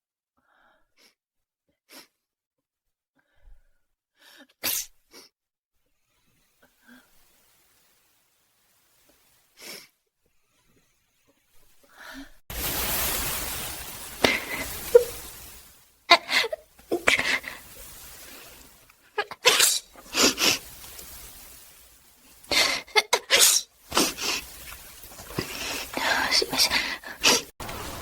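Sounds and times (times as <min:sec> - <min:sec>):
person sneezing: 0:04.6 - 0:04.9, 0:19.2 - 0:20.4
steady hiss: 0:06.0 - 0:10.0, 0:12.5 - 0:28.0.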